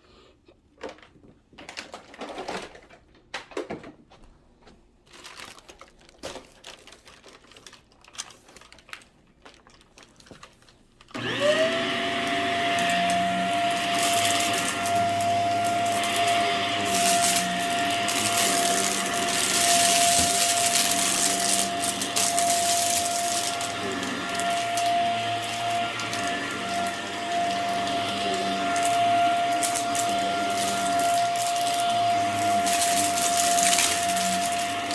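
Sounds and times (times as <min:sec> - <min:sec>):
debris crackling in vacuum: 0:11.2 - 0:34.9
vacuum cleaner running: 0:11.2 - 0:34.9.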